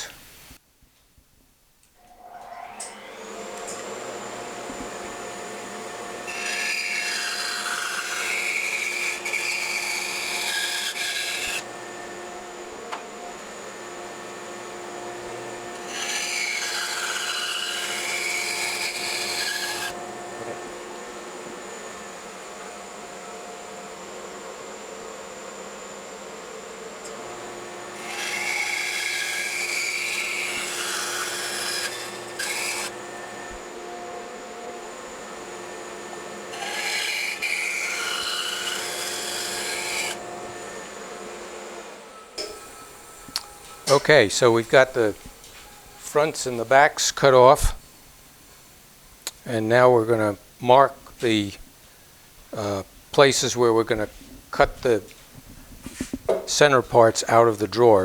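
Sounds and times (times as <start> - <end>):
bandsaw humming: 2.0 - 51.6, 52.4 - 58.0
saw blade cutting wood: 2.1 - 22.1, 27.0 - 47.8.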